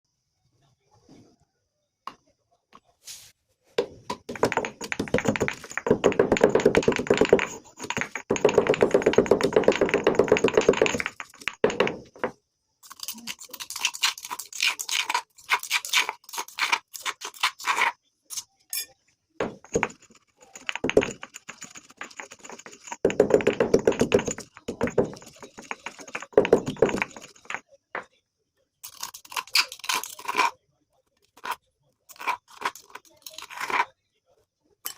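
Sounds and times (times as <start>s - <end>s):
crumbly sweets being crushed: 28.8s - 30.5s, 31.2s - 33.9s.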